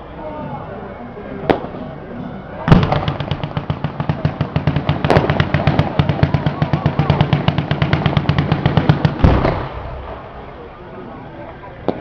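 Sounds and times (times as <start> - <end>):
firecrackers crackling: 2.7 - 10.6.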